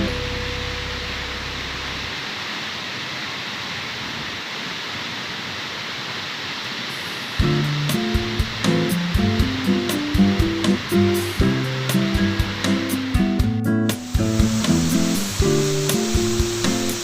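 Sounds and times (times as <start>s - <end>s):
low note of background music: 0.0s - 2.1s
waterfall rushing: 0.0s - 17.0s.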